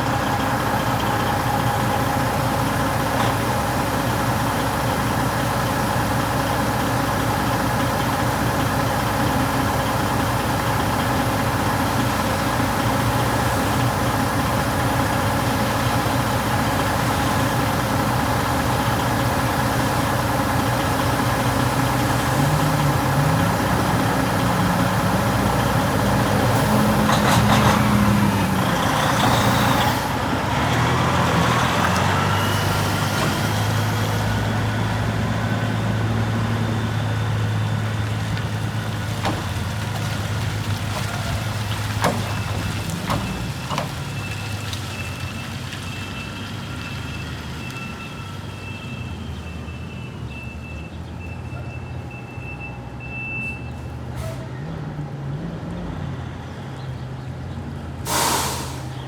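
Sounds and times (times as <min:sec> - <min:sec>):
heavy truck engine running: 0:00.0 - 0:59.0
reversing alarm beeping: 0:42.3 - 0:53.9.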